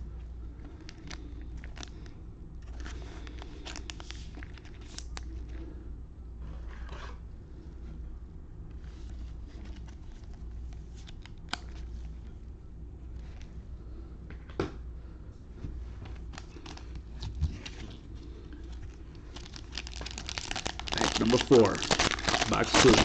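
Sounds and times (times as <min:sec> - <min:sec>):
low steady hum: 0:00.0 - 0:23.0
cards and packaging rustling: 0:02.6 - 0:05.6, 0:16.2 - 0:23.0.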